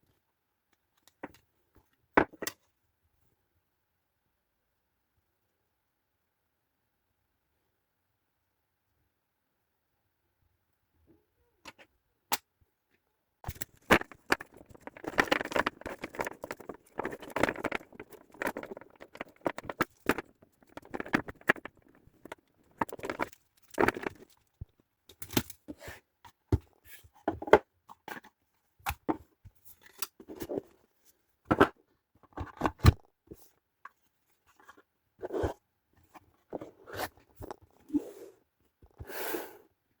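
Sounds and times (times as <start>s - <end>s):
packaging tearing and rustling: 13.5s - 22.0s.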